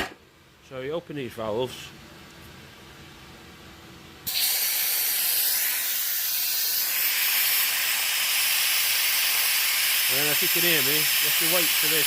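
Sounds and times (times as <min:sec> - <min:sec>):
compressed air hissing: 0:04.3 - 0:12.0.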